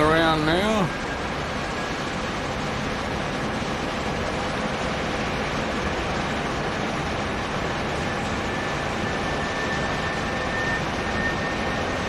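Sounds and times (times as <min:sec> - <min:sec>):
jet engines running low power: 0:00.0 - 0:12.0.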